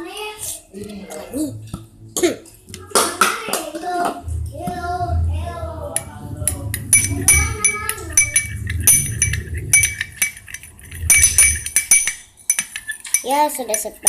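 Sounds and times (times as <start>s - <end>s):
spoon clinking against bowl: 6.9s - 14.0s.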